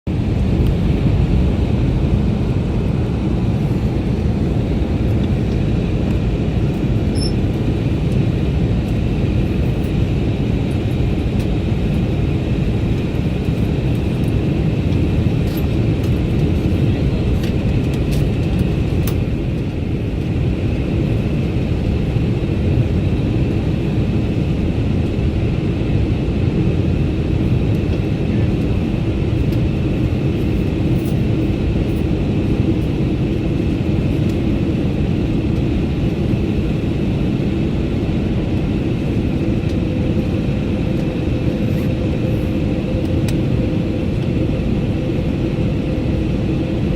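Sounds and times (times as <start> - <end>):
airplane cabin roar: 0.1 - 46.9
faint high whine: 7.0 - 7.5.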